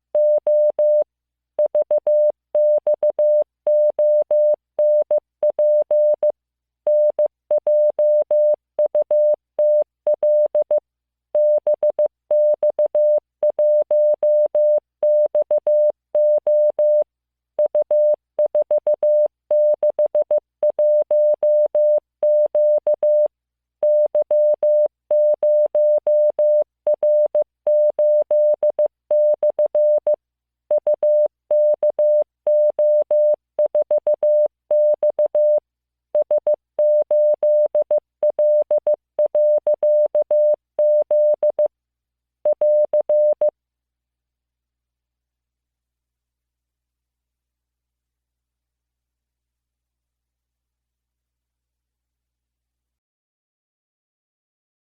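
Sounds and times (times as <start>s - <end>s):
morse code beeps: 42.5s - 43.5s.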